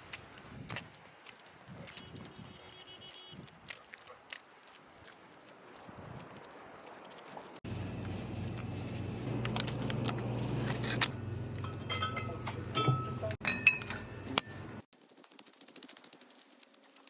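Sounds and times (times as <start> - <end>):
tableware clinking: 11.6 - 14.6.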